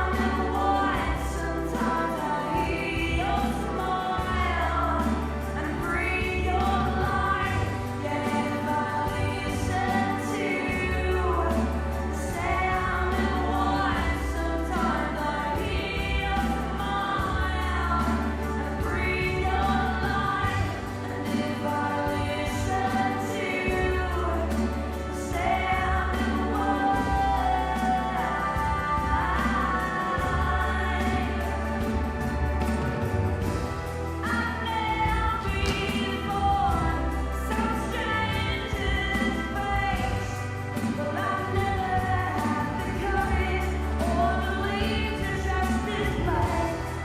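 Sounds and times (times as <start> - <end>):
choir singing: 0.0 - 40.1
sustained deep bass notes: 27.0 - 40.8.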